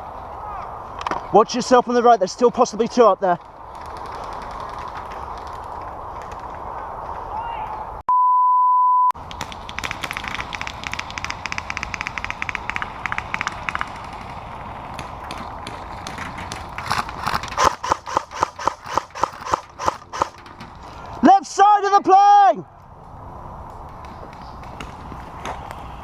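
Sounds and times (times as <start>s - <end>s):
airsoft guns clicking shots: 9.2s - 14.3s, 16.8s - 20.4s.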